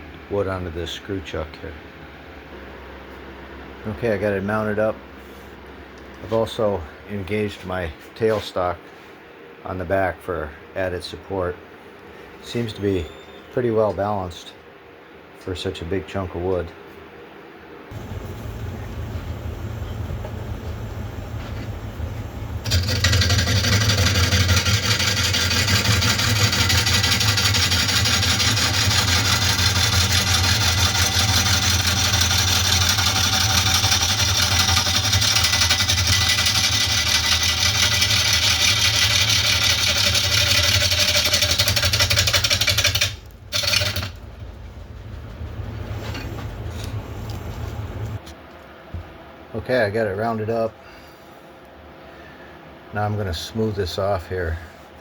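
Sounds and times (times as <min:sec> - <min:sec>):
turning tool cutting wood: 0:22.6 - 0:44.3
wood lathe motor humming: 0:22.6 - 0:44.3.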